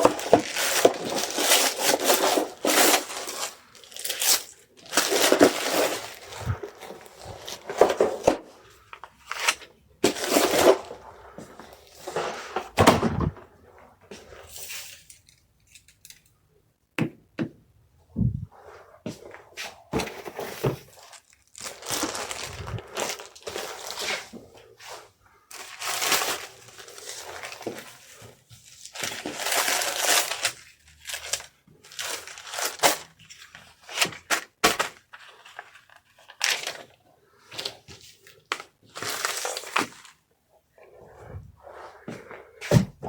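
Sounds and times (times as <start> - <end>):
packing material crumpling: 0.0 - 8.4, 20.9 - 24.3, 25.5 - 28.1, 28.7 - 34.2, 38.3 - 40.2.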